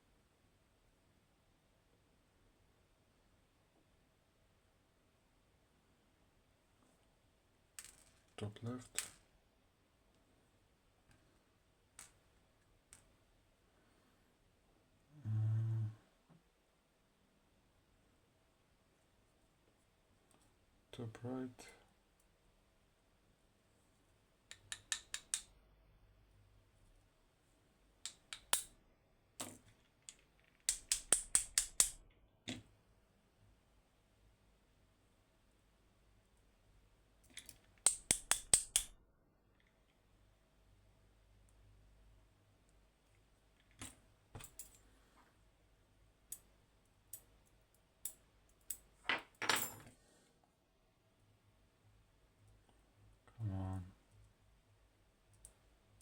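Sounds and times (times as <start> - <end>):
lockpicking tools clicking: 24.5 - 25.5, 28.1 - 28.7, 30.0 - 32.0, 37.3 - 38.9
small metal parts clicking: 37.3 - 38.9.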